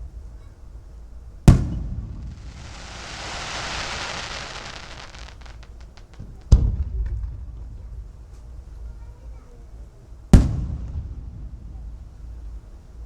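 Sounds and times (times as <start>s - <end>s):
firework booms: 1.5s - 6.8s
sharp firework pops: 1.5s - 7.4s
firework crackling hiss: 2.1s - 6.5s.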